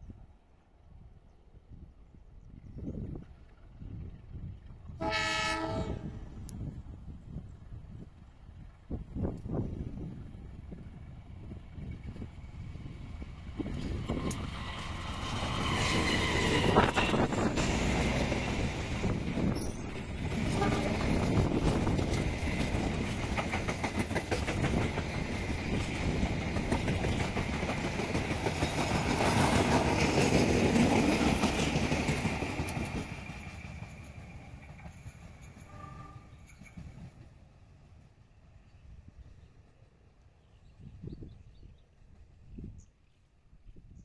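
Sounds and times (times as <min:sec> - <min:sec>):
train wheels clattering: 0:13.6 - 0:37.4.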